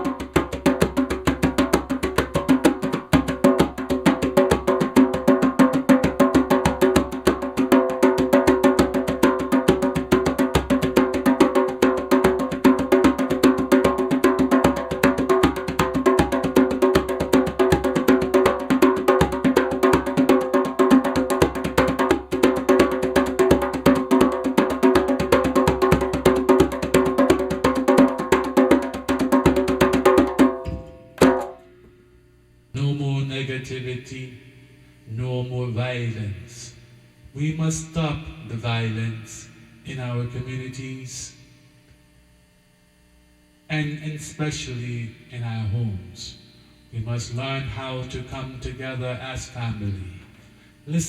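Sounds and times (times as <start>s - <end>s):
drum played in fast rhythm: 0.0s - 31.6s.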